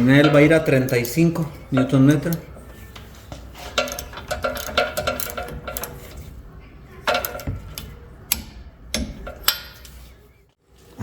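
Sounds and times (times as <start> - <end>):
metal tools clinking on steel: 0.0 - 2.5, 3.6 - 6.2.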